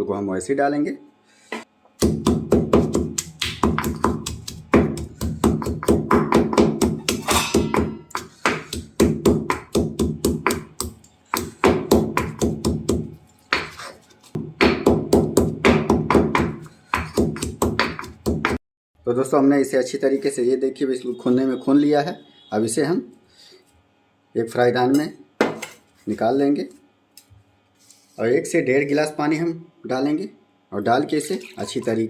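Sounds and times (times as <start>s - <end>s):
pestle pounding in a mortar: 2.0s - 18.6s.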